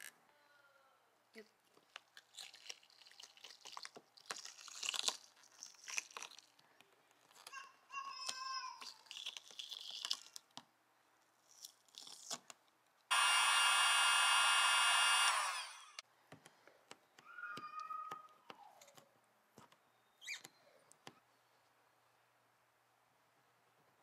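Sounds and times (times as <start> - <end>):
motor whir: 13.1 - 16.0.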